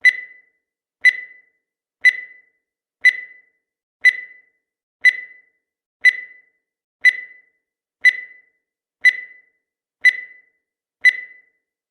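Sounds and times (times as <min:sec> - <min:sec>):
short high electronic beeps: 0:11.1 - 0:11.5.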